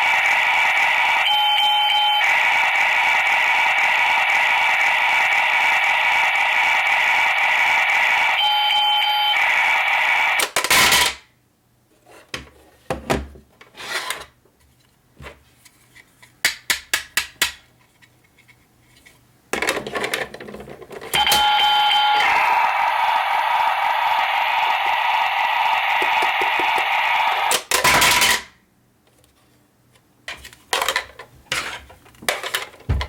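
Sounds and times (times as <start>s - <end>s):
short electronic tone: 21.2s - 22.6s.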